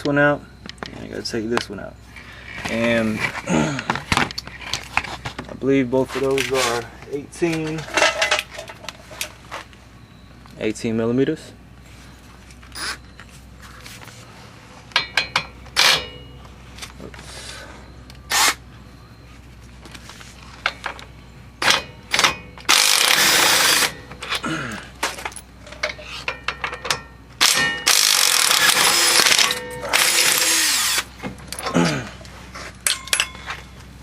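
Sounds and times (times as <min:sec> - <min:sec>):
impact wrench bursts: 0:18.3 - 0:18.6, 0:21.6 - 0:24.5, 0:27.4 - 0:31.6
metal tool clinks: 0:32.8 - 0:33.6.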